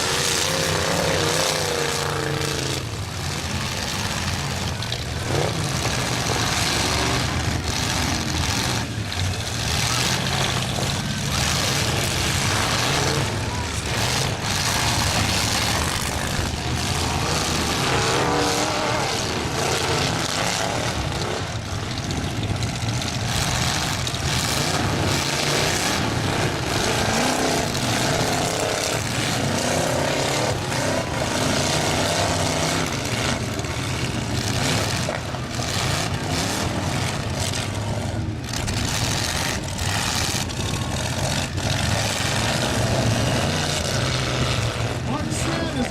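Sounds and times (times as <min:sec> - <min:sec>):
truck engines revving: 0:00.0 - 0:45.9
trucks crashing: 0:00.0 - 0:45.9.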